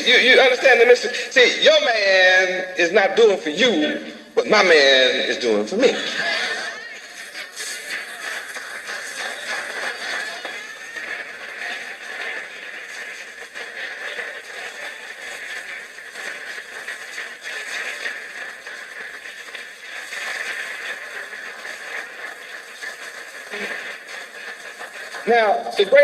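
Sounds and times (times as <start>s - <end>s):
audience applauding and cheering: 5.9s - 26.0s.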